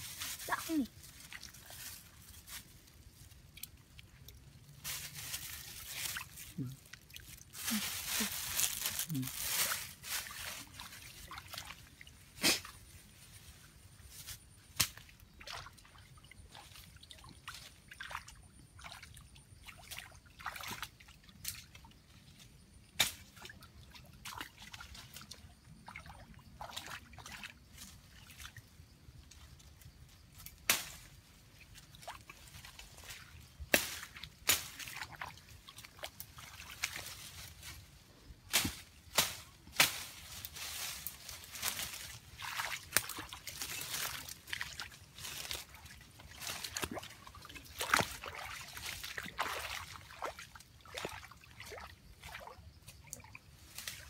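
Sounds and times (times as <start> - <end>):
water sloshing and splashing: 0.0 - 13.4, 14.8 - 22.6, 23.2 - 37.9, 38.6 - 54.0.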